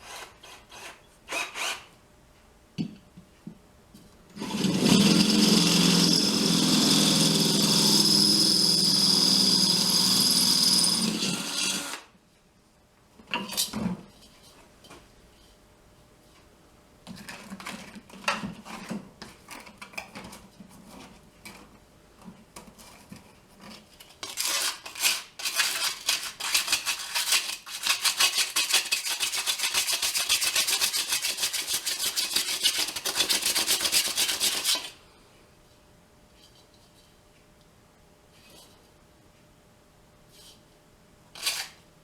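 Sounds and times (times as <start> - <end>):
drill bit scraping through steel: 4.4 - 12.0.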